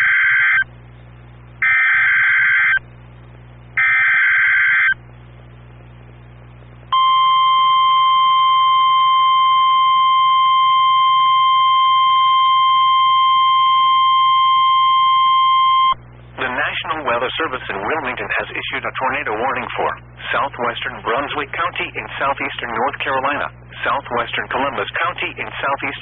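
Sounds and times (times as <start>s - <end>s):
steady single-pitch alarm tone: 0.0s - 0.7s, 1.6s - 2.8s, 3.8s - 5.0s, 6.9s - 16.0s.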